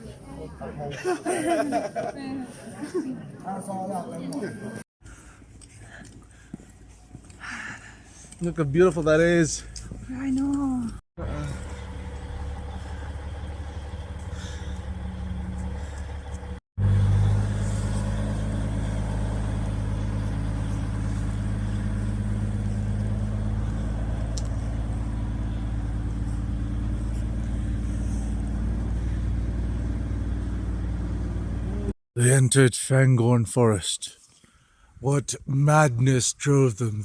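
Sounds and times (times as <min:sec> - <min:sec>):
vehicle engine humming: 0:04.2 - 0:32.0.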